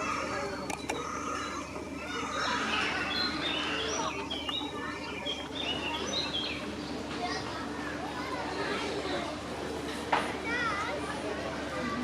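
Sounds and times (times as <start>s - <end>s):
birds chirping: 0.0s - 7.1s.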